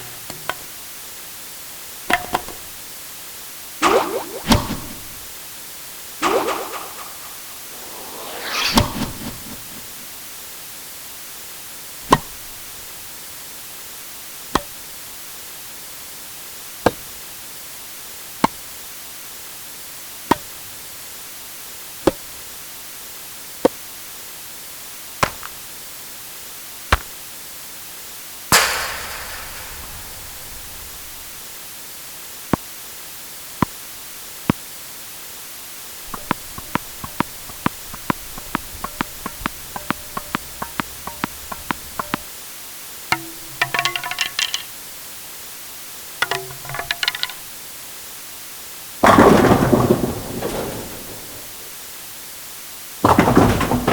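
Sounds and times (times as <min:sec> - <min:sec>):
tennis racket hitting ball: 0:03.8 - 0:05.3, 0:06.2 - 0:09.9, 0:36.1 - 0:42.3, 0:43.1 - 0:44.7
steady hiss: 0:06.2 - 0:15.0, 0:28.5 - 0:32.4
small ball ticks: 0:36.1 - 0:42.3, 0:43.1 - 0:44.7.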